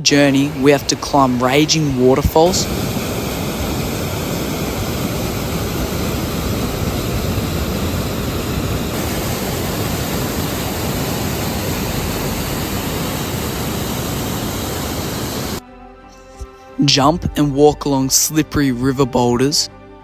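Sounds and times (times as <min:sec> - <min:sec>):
waterfall rushing: 0:00.0 - 0:15.6.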